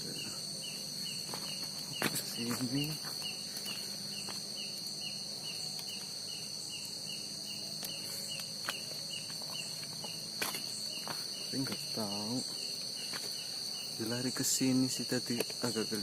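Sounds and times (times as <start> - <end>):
crickets trilling: 0.0 - 16.0.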